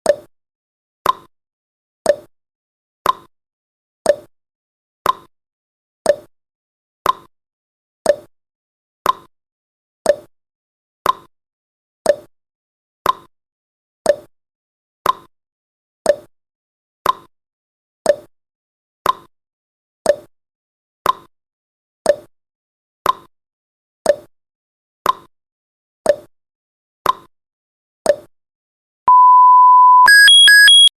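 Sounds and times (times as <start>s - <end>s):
electronic alarm beep: 29.1s - 30.9s.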